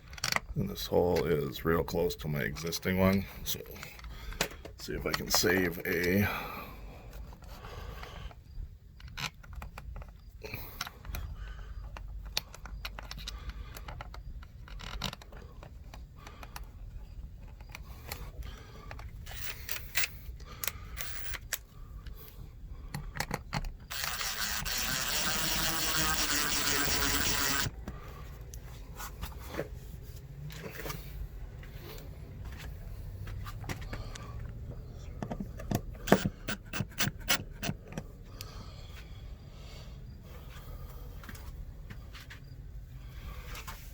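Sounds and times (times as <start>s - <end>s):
handling clicks: 18.9s - 21.6s
power drill running: 19.3s - 20.1s, 20.9s - 21.4s, 23.9s - 27.8s, 36.0s - 37.7s.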